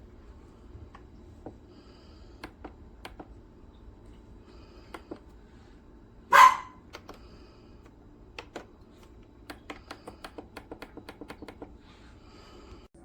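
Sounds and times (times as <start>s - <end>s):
short loud bark-like sound: 6.3s - 6.8s.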